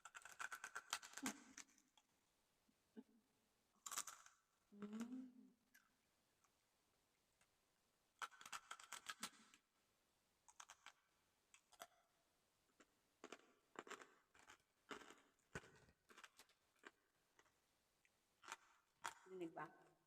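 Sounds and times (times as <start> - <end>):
crispy food crunching when chewed: 3.8 - 4.4, 10.5 - 11.0, 11.6 - 12.0, 12.8 - 17.6, 18.4 - 19.3.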